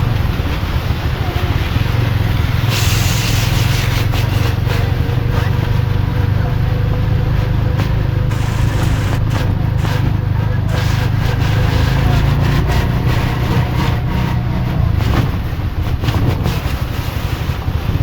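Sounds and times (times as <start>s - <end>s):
rain hiss: 0.0s - 13.3s
traffic engine hum: 0.0s - 18.0s.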